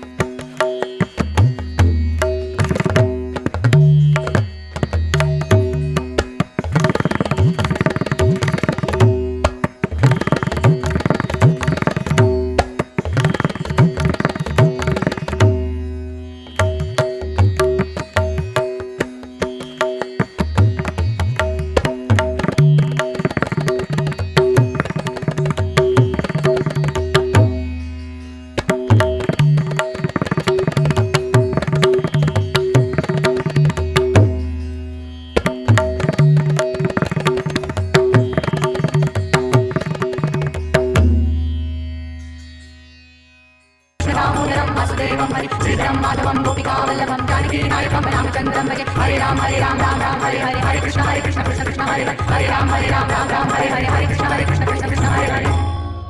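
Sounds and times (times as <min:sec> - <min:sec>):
rapid tabla strokes: 0:00.0 - 0:27.9, 0:28.5 - 0:41.6.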